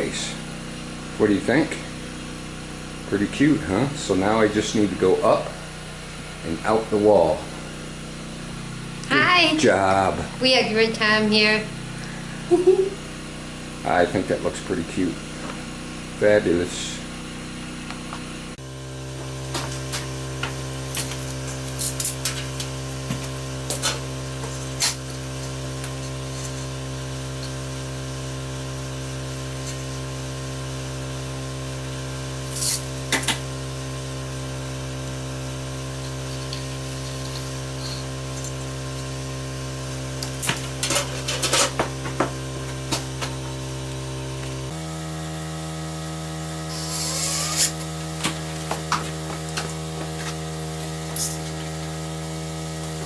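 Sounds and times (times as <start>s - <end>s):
motor hum: 0.0s - 53.0s
hand tools clattering: 19.5s - 26.8s, 40.2s - 43.5s, 46.8s - 51.6s.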